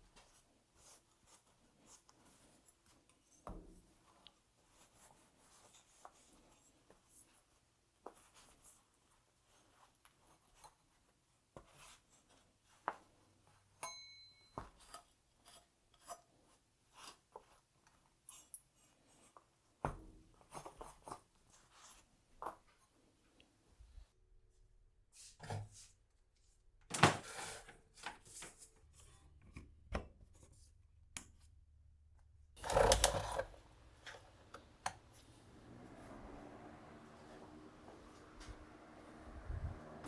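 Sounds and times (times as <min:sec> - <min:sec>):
short ringing ping: 0:13.8 - 0:14.6.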